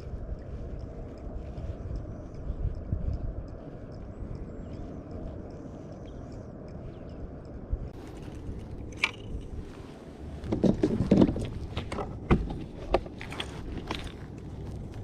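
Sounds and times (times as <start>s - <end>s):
steady low rumble: 0.0s - 15.0s
knocks and clunks on kayak: 10.4s - 13.3s.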